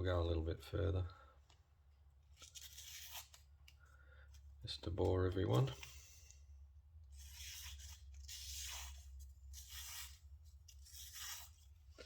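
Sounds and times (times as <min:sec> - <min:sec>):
knife scraping on whetstone: 0:07.2 - 0:11.8.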